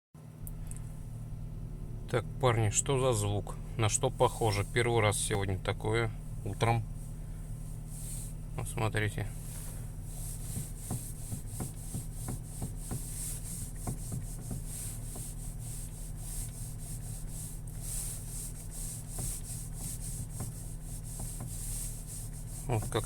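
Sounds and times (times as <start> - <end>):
steady low hum: 0.2 - 23.0
metallic steering clicks and scrapes: 6.4 - 23.0.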